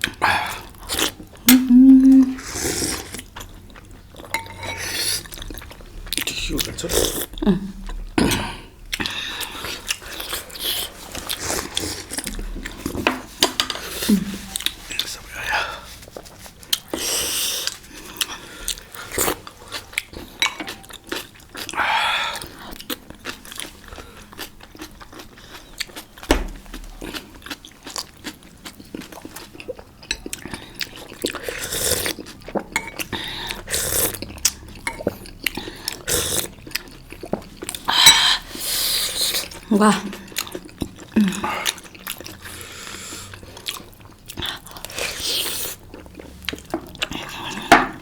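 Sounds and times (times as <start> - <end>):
dumplings being chewed: 0.0 - 48.0.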